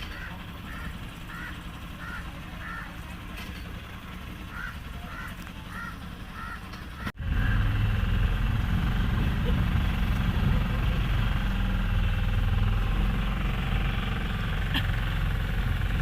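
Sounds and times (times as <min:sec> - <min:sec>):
bird cawing: 0:00.0 - 0:03.0, 0:04.5 - 0:07.1
boat motor rumbling: 0:00.0 - 0:16.0.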